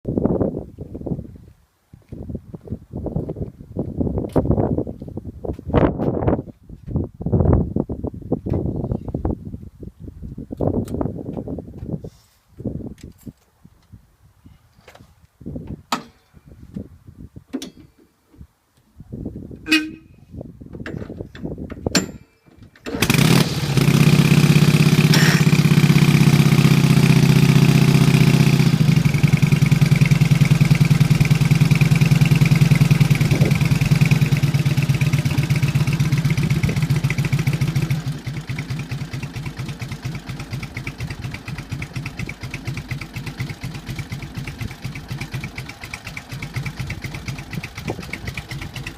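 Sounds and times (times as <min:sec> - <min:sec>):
motorcycle engine idling: 0:23.1 - 0:48.9.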